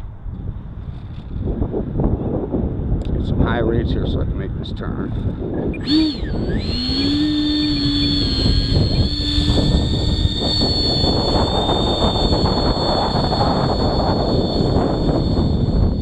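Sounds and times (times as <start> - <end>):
electric ducted fan whine: 0.0 - 16.0
rushing air: 5.7 - 16.0.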